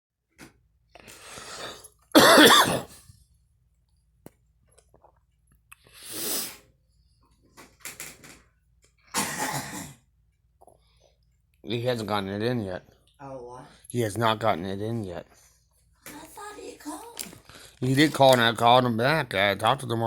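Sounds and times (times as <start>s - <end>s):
girl coughing: 2.2s - 3.0s, 9.2s - 10.0s.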